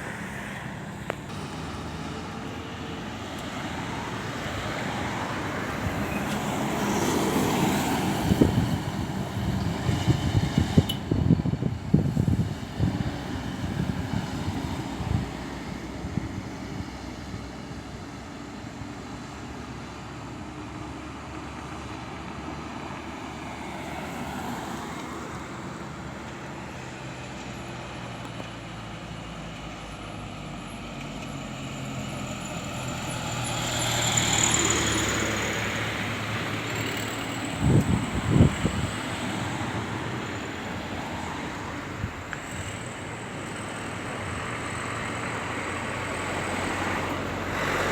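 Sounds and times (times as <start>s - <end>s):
large vehicle passing close: 0.0s - 17.8s, 29.6s - 47.9s
road traffic rumble and hiss: 0.0s - 47.9s.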